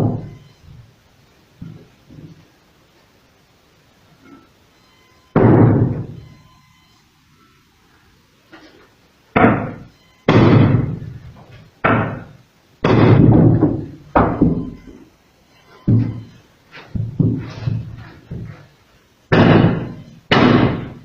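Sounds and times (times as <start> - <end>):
sledgehammer striking axe: 5.4 - 6.2, 9.4 - 11.0, 11.8 - 14.6, 19.3 - 21.0.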